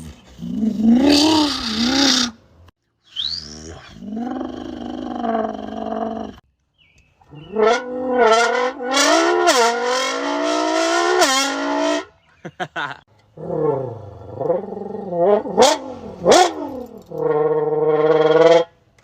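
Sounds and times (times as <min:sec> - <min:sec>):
man imitating a diesel engine: 0:00.0 - 0:02.4.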